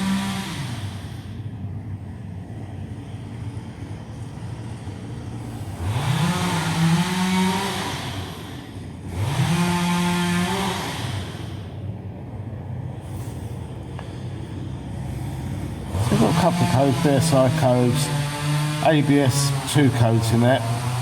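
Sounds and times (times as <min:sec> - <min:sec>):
chainsaw idling and revving: 0:00.0 - 0:01.6, 0:05.5 - 0:11.8, 0:12.9 - 0:21.0.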